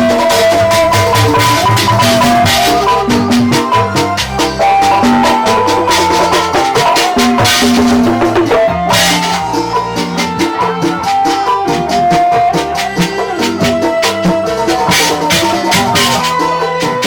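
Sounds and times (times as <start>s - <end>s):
drums and hand percussion: 0.0s - 17.0s
sustained melodic notes: 0.0s - 17.0s.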